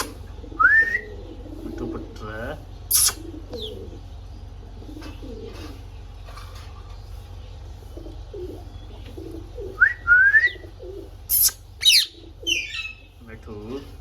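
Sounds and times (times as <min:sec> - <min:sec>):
parrot cooing: 0:00.0 - 0:02.0, 0:02.9 - 0:04.1, 0:08.0 - 0:13.1
low hum: 0:00.0 - 0:14.0
parrot whistles: 0:09.8 - 0:10.6, 0:11.3 - 0:13.1.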